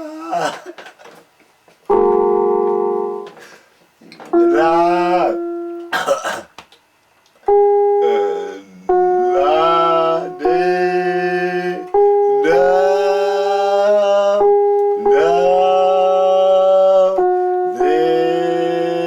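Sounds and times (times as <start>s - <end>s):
keyboard held notes: 1.9s - 6.4s, 7.5s - 19.0s
person singing: 4.4s - 5.9s, 8.0s - 19.0s.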